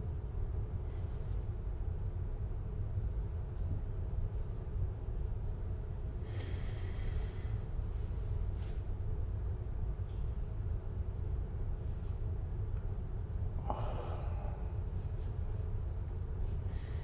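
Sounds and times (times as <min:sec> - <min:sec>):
person's hissing breath: 0:06.2 - 0:07.7, 0:13.6 - 0:14.9, 0:16.6 - 0:17.0.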